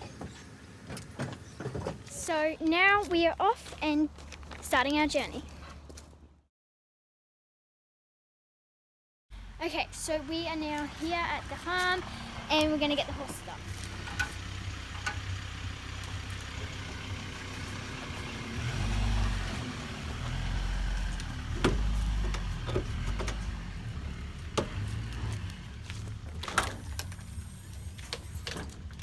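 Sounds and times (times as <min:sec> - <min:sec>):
car engine and tyres rumbling: 0:00.0 - 0:06.5, 0:09.3 - 0:29.0
car body knocks and rattles: 0:00.2 - 0:02.2, 0:21.4 - 0:25.4.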